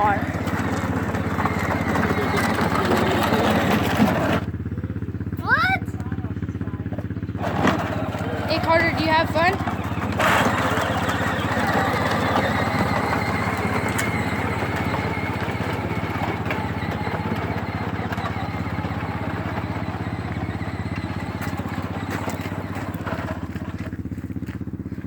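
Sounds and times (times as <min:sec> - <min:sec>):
toy car electric motor humming: 0:00.0 - 0:04.6, 0:07.3 - 0:25.0.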